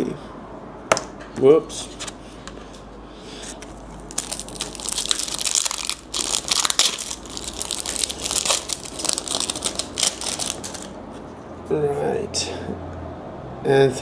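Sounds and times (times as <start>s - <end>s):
plastic wrapper tearing and crinkling: 3.5s - 11.0s.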